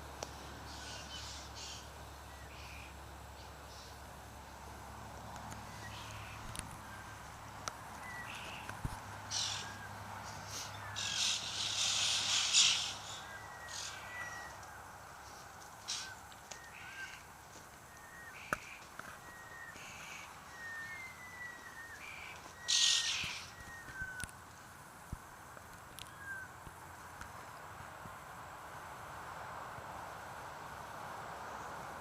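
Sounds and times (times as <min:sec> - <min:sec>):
birds harsh rasping calls: 0:00.6 - 0:03.9, 0:08.0 - 0:14.7, 0:15.8 - 0:17.3, 0:18.0 - 0:24.3.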